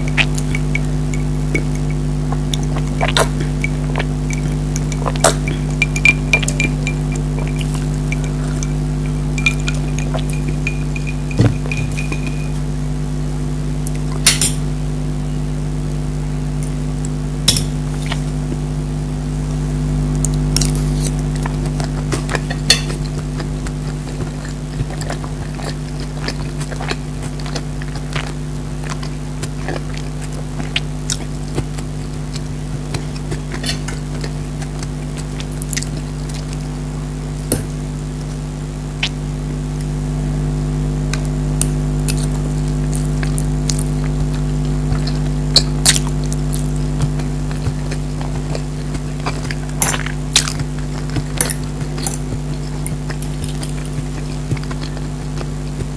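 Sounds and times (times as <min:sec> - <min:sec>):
chewing: 0:00.0 - 0:12.8, 0:16.6 - 0:18.6, 0:20.2 - 0:37.8, 0:41.0 - 0:55.9
steady low hum: 0:00.0 - 0:55.9
cutlery clinking on a plate: 0:22.7 - 0:23.0.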